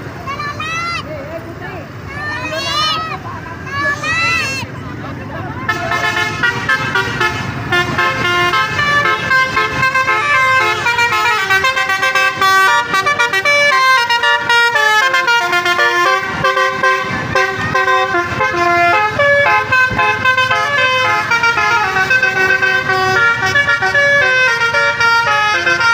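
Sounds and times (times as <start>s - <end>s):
bus horn melody: 5.7s - 25.9s.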